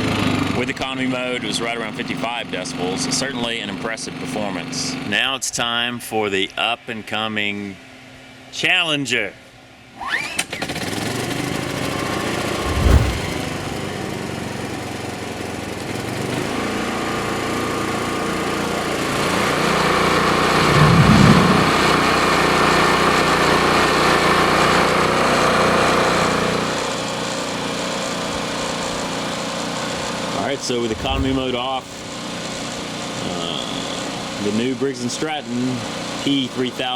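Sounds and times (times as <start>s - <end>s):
low thumps: 12.6s - 13.5s, 20.5s - 22.1s, 30.8s - 31.9s.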